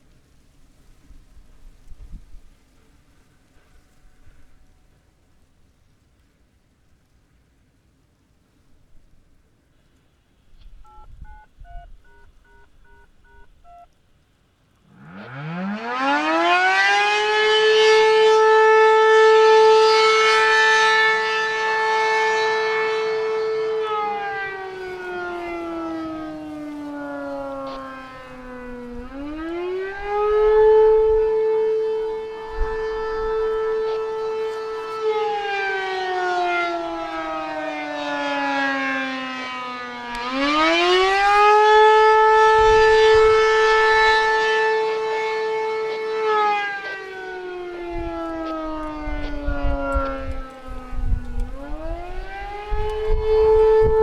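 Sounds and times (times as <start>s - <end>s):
civil defense siren wailing: 0.0s - 5.5s, 14.8s - 54.0s
faint touch-tone beeps: 10.6s - 13.9s.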